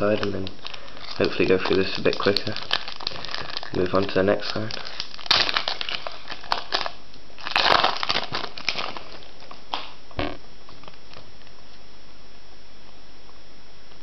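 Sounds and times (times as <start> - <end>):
foil wrapper crinkling: 0.0 - 10.0
steady background hiss: 0.0 - 14.0.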